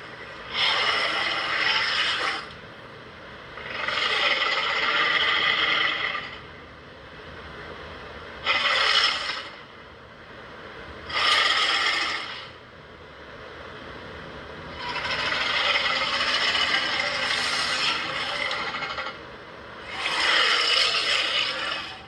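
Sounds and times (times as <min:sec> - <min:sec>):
monster roaring: 0:19.9 - 0:22.0.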